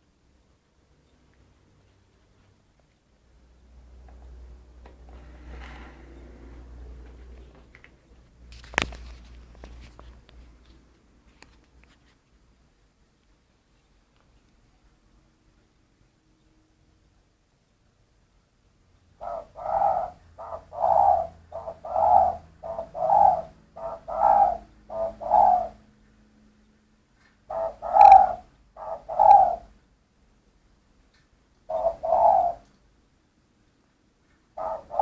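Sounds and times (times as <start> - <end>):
dove cooing: 19.2 - 25.8, 27.5 - 29.8, 31.6 - 32.7, 34.6 - 35.0.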